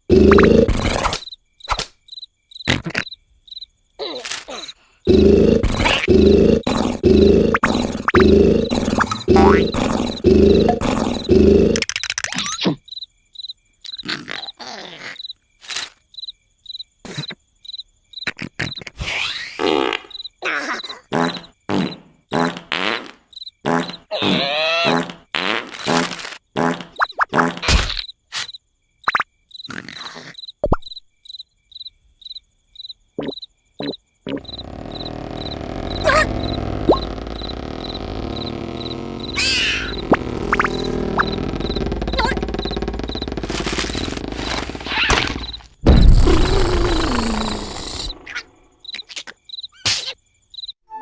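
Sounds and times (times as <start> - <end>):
cartoon snoring: 0.0 - 1.2, 4.5 - 11.9, 20.7 - 22.8, 33.8 - 48.3
crickets chirping: 0.0 - 19.0, 19.6 - 25.1, 25.8 - 50.8.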